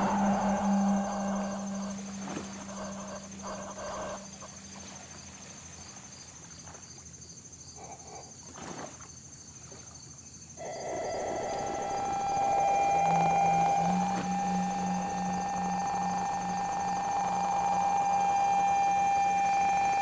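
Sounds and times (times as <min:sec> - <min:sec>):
synthesizer short tones: 0:00.0 - 0:04.1, 0:10.6 - 0:20.0
high-pitched trill: 0:00.0 - 0:04.2, 0:10.6 - 0:20.0
synthesizer drone: 0:00.0 - 0:04.5, 0:10.6 - 0:20.0.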